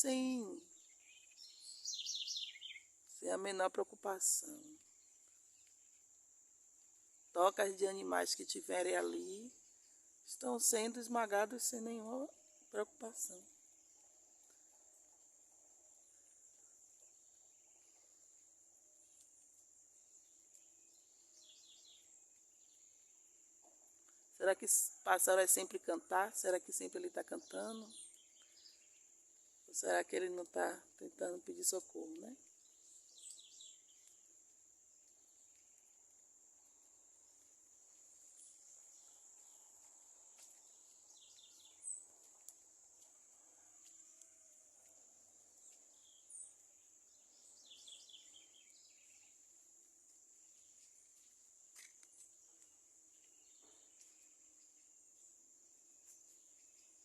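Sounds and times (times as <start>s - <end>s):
bird chirps: 0.3s - 2.9s, 45.6s - 49.4s.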